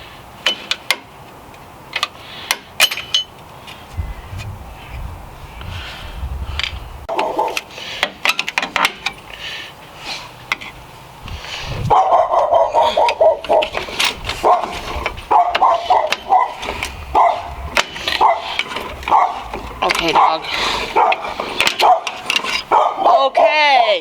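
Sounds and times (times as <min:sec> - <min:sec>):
hand tools clinking on metal: 0:01.9 - 0:03.8, 0:06.6 - 0:09.5, 0:12.3 - 0:23.6
dog barking: 0:07.1 - 0:07.6, 0:11.9 - 0:13.8, 0:14.4 - 0:17.5, 0:18.2 - 0:19.5, 0:20.1 - 0:23.6.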